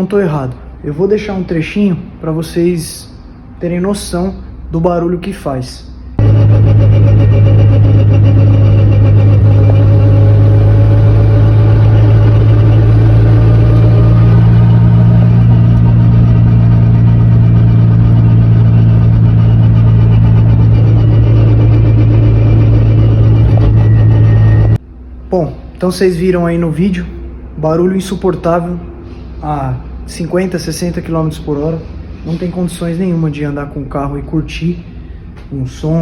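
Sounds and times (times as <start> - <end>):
car differential droning: 6.2 - 25.3.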